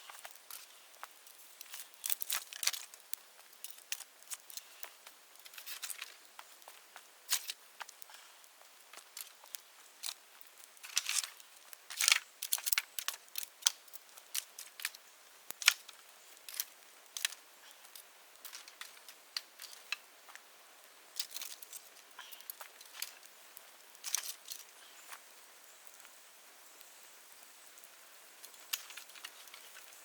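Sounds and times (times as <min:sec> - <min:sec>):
bonfire crackling and popping: 0:00.0 - 0:30.0.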